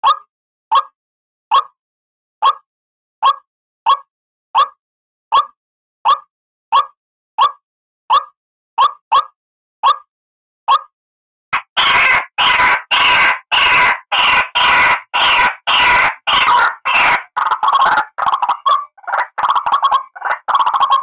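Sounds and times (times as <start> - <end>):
waterhen calling: 11.6 - 21.0.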